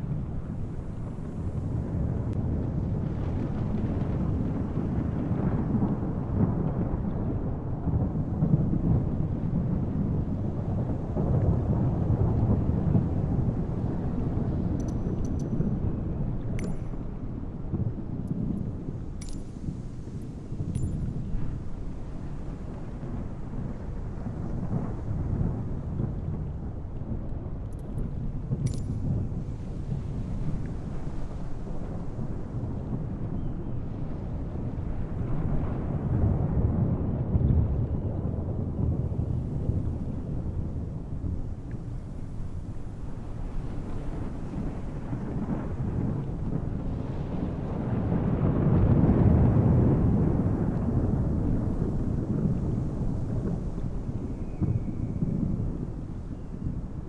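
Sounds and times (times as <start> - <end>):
helicopter rotor low rumble: 0.0 - 35.9
wind buffeting microphone: 0.0 - 57.0
helicopter rotor and engine rumble: 14.8 - 15.8.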